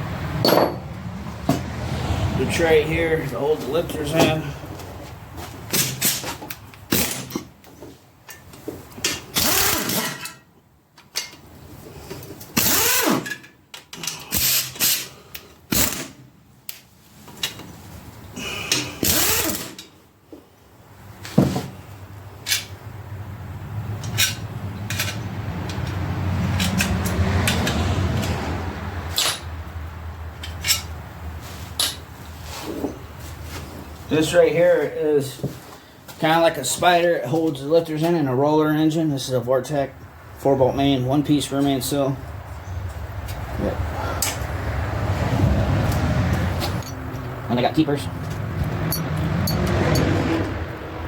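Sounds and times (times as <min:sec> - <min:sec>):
tools and metal parts clanking: 0:00.4 - 0:01.0, 0:05.7 - 0:07.5, 0:08.3 - 0:11.5, 0:12.1 - 0:16.2, 0:22.4 - 0:22.8, 0:24.0 - 0:28.4, 0:29.1 - 0:29.6, 0:30.3 - 0:33.0, 0:46.6 - 0:47.3, 0:48.2 - 0:50.5.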